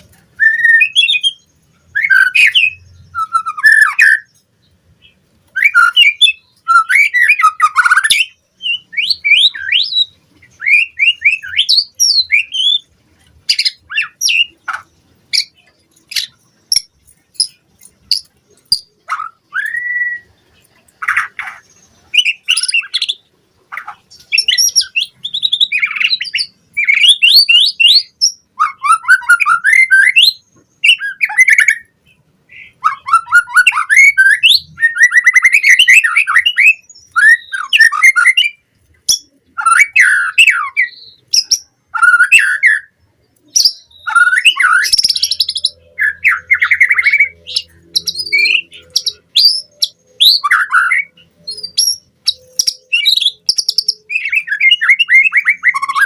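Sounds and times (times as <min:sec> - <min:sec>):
bird singing whistled phrases: 0:00.4 - 0:04.3, 0:05.5 - 0:12.9, 0:16.1 - 0:20.4, 0:21.0 - 0:23.2, 0:24.2 - 0:31.9, 0:32.5 - 0:56.0.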